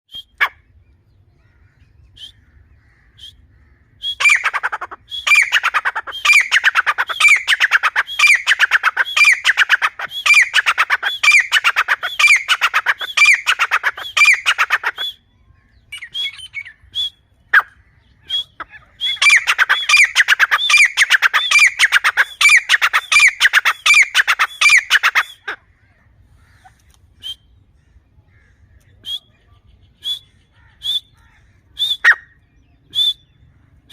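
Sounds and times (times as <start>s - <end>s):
francolins calling shrilly: 1.5s - 25.6s.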